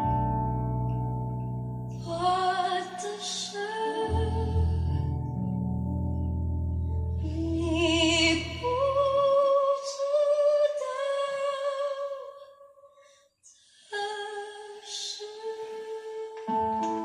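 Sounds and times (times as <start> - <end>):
bass line: 0.0 - 2.6, 4.1 - 9.4.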